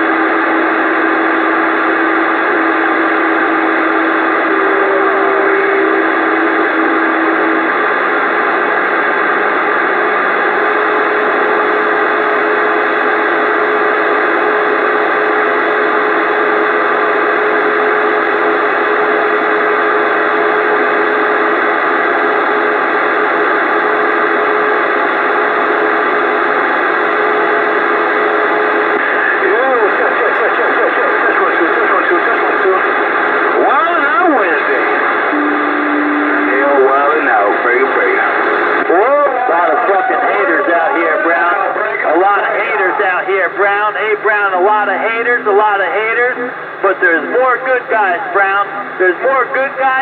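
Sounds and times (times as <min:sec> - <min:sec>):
radio static hiss: 0:00.0 - 0:16.0, 0:20.8 - 0:50.0
thin steady whistle tone: 0:35.3 - 0:37.1.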